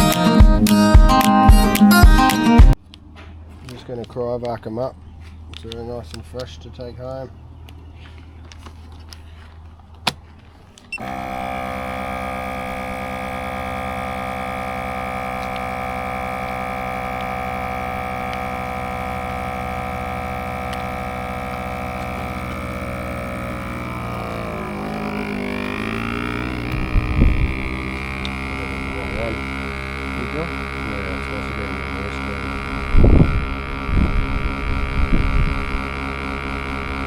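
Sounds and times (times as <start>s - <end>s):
vacuum sealer pump droning: 10.0s - 37.0s
low thumps: 19.6s - 35.9s.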